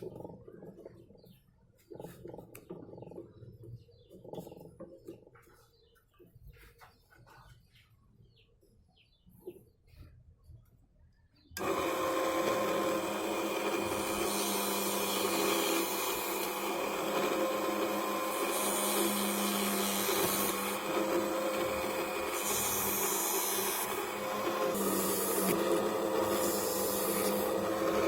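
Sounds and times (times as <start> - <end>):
small motor humming: 11.6 - 28.0.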